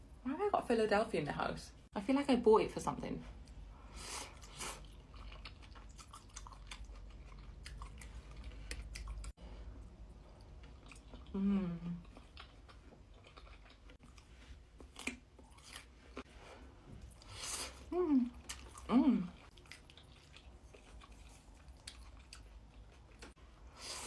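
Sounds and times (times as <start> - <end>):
person chewing food: 3.4 - 24.0
person humming: 11.3 - 12.0, 17.9 - 18.3, 18.9 - 19.3.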